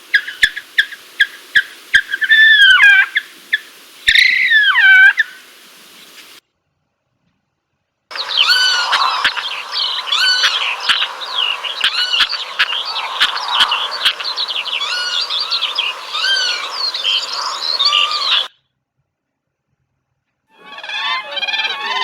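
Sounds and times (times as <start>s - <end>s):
birds chirping: 0.0s - 6.2s, 8.1s - 18.6s.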